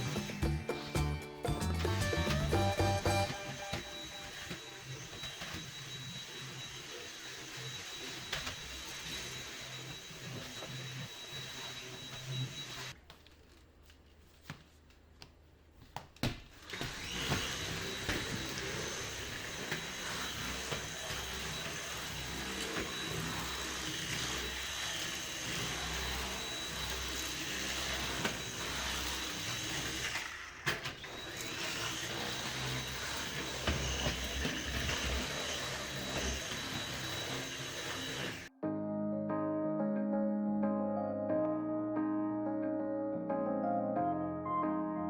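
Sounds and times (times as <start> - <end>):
vacuum cleaner whining: 0.0 - 13.0, 16.5 - 38.6.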